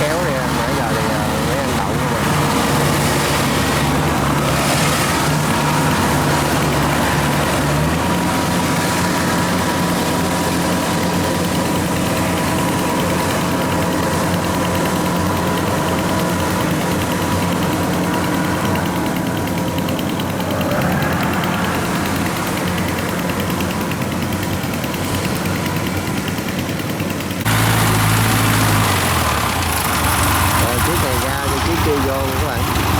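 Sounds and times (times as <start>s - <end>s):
diesel engine running: 0.0s - 32.9s.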